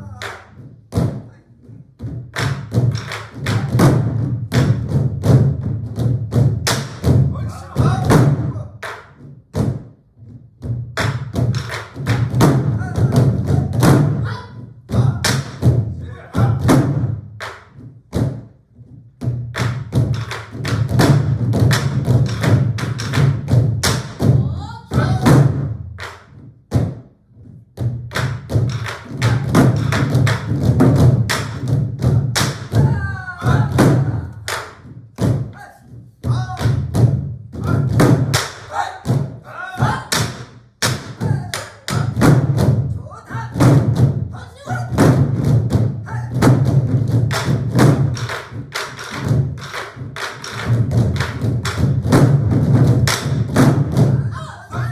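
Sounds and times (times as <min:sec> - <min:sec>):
barrel drums playing: 0:02.0 - 0:27.1, 0:27.7 - 0:54.9
people shouting: 0:07.4 - 0:08.2, 0:12.7 - 0:15.2, 0:16.0 - 0:16.7, 0:24.4 - 0:25.3, 0:32.8 - 0:34.5, 0:35.5 - 0:36.7, 0:37.6 - 0:37.9, 0:38.6 - 0:40.3, 0:41.2 - 0:42.2, 0:43.0 - 0:43.6, 0:44.4 - 0:45.0, 0:46.1 - 0:46.4, 0:54.1 - 0:54.9.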